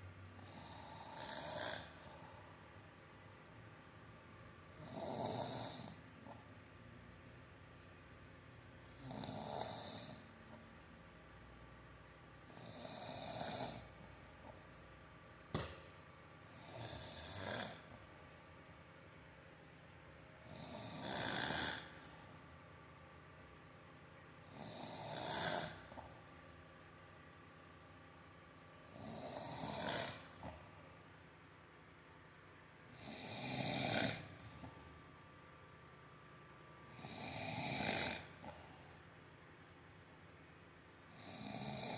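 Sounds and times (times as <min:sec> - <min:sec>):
person snoring heavily: 0:00.4 - 0:02.4, 0:04.7 - 0:06.0, 0:08.9 - 0:10.3, 0:12.5 - 0:14.0, 0:16.5 - 0:18.0, 0:20.4 - 0:22.1, 0:24.5 - 0:26.1, 0:28.9 - 0:30.7, 0:32.9 - 0:34.8, 0:36.9 - 0:38.6.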